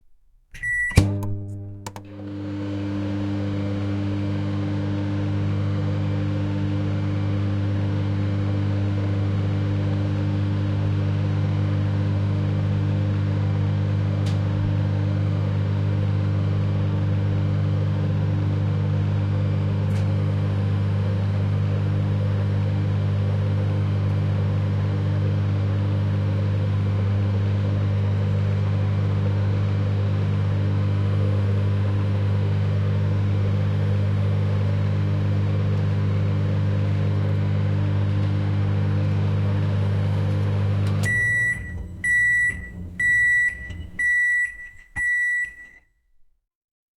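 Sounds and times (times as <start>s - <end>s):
microwave oven humming: 0.1s - 45.8s.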